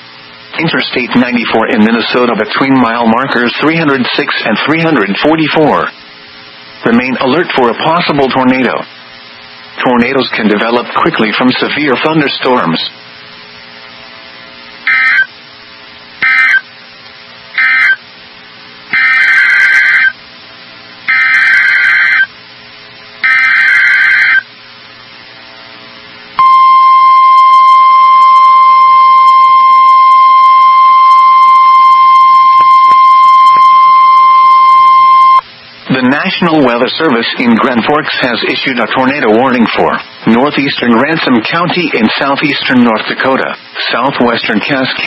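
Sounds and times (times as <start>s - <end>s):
data bursts: 14.8s - 15.3s, 16.2s - 16.7s, 17.6s - 18.0s, 18.9s - 20.2s, 26.4s - 35.4s
steady alarm tone: 14.8s - 15.4s, 16.2s - 16.7s, 17.5s - 18.0s, 18.9s - 20.2s, 21.1s - 22.4s, 23.2s - 24.5s, 26.4s - 35.4s.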